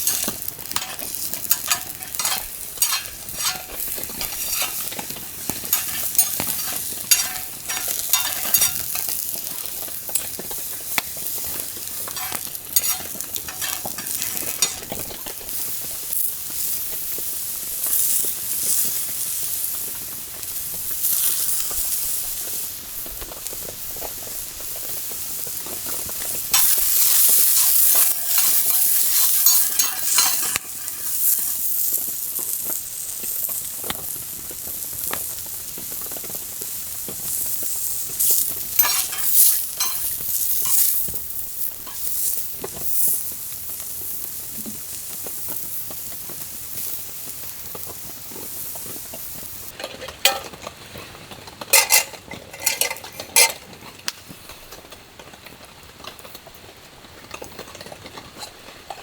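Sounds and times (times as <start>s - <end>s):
utensil stirring and scraping: 0.0s - 15.4s, 26.5s - 31.6s, 38.8s - 41.0s
food sizzling in a pan: 0.0s - 54.5s.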